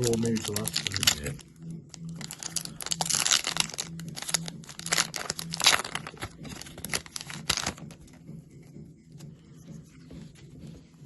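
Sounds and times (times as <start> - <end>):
foil pack tearing and crinkling: 0.0 - 1.4, 2.1 - 8.0.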